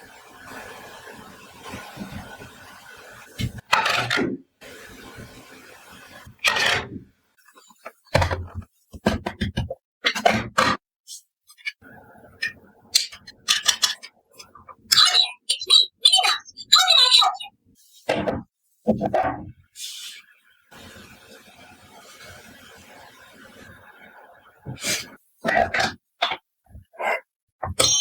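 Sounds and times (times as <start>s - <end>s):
toy food scraping and knocking: 12.4s - 14.1s.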